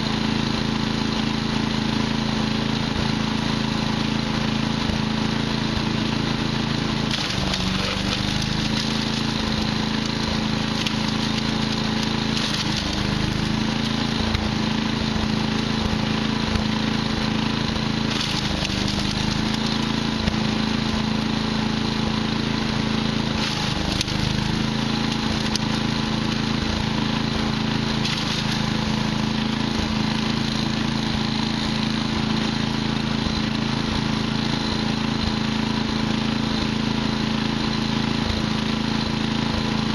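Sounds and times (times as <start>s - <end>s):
wood chipper engine running: 0.0s - 39.9s
wood crackling being chipped: 6.9s - 32.6s.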